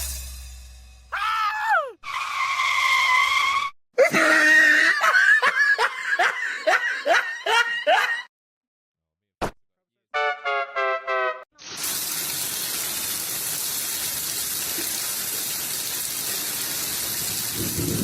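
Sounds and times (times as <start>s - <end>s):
harsh scream: 1.1s - 5.1s
voice crying out: 1.2s - 2.0s, 4.0s - 5.1s.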